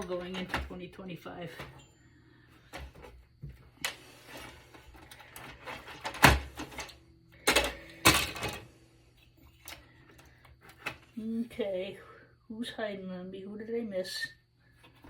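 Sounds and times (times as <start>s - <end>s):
computer chassis clunks and knocks: 5.8s - 8.6s.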